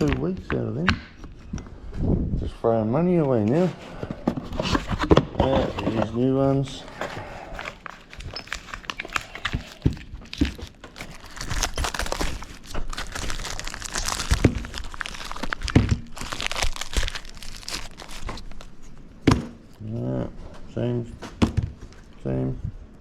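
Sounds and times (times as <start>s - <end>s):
packaging crinkling and rustling: 3.3s - 18.9s.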